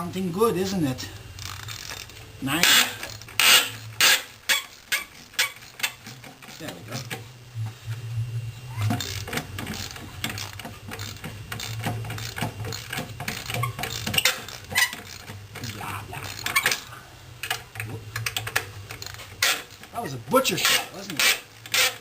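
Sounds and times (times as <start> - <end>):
steady low hum: 0.0 - 22.0
socket ratchet clicking: 1.4 - 7.2, 20.6 - 22.0.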